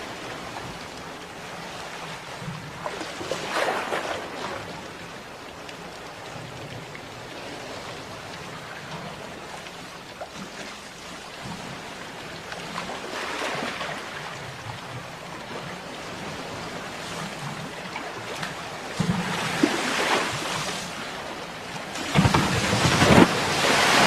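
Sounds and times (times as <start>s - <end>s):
ocean surf washing ashore: 0.0s - 6.1s, 10.5s - 24.0s
wave breaking: 18.3s - 24.0s.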